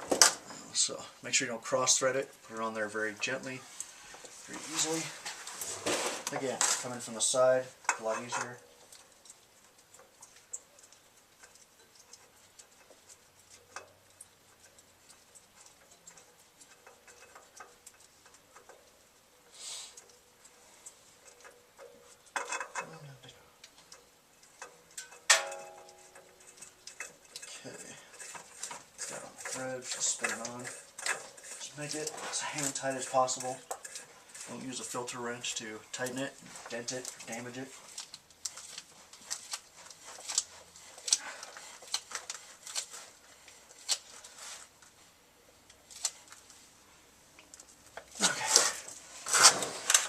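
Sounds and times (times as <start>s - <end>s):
oil filter clicks and scrapes: 0.0s - 50.0s
brief rustle: 48.1s - 50.0s.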